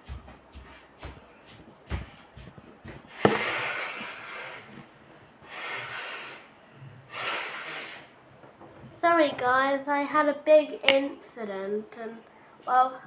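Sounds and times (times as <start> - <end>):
loud breathy exhalations: 7.1 - 8.2.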